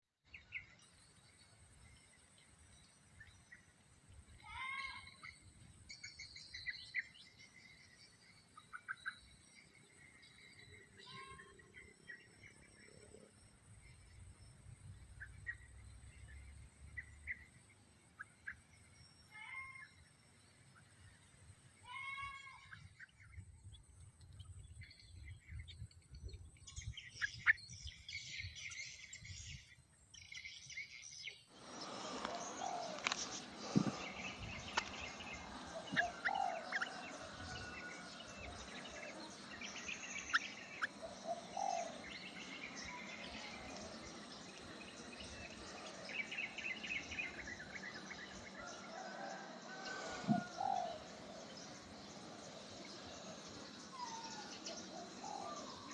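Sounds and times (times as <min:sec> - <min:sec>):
birds chirping and calling: 0:00.3 - 0:20.1, 0:24.3 - 0:55.9
background hiss: 0:28.1 - 0:55.9.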